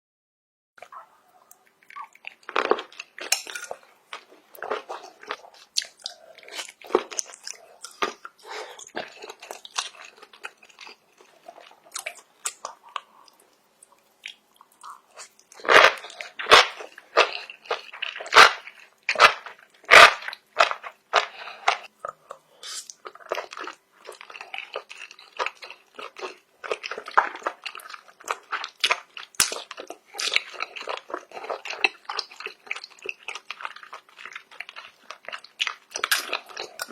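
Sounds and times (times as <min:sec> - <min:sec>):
shrimp being crunched and chewed: 0:14.2 - 0:22.2, 0:22.9 - 0:36.9.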